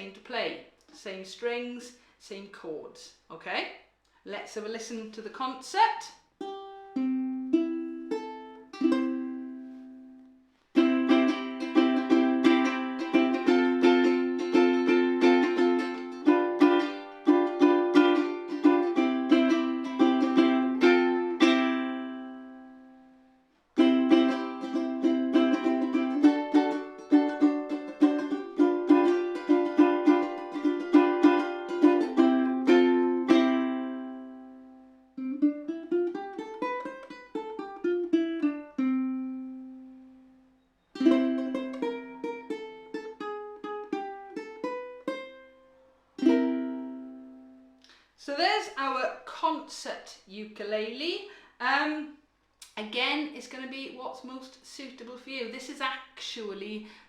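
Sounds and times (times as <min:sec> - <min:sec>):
ukulele picked notes: 0:06.4 - 0:23.2, 0:23.8 - 0:47.8
ukulele strummed chords: 0:06.4 - 0:23.2, 0:23.8 - 0:47.8.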